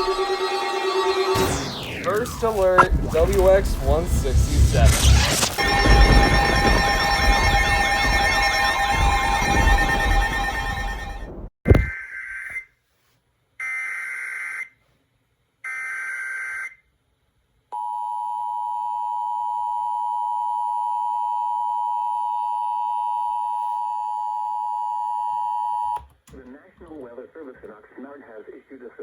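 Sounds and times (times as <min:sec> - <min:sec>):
buzzing warbling data tones: 0:01.4 - 0:11.9
two-tone alert signal: 0:04.8 - 0:12.5.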